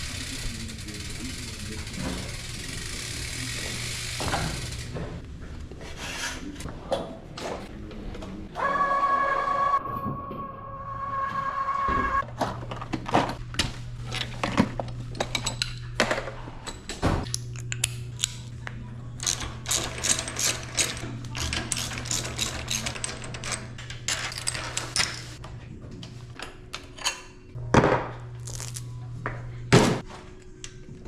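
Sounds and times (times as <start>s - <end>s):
metallic clicking and ratcheting of tools: 19.2s - 25.4s.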